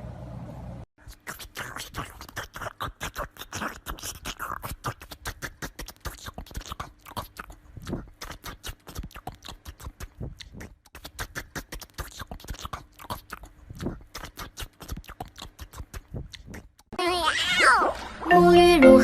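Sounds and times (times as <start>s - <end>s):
dog chewing: 1.2s - 16.7s.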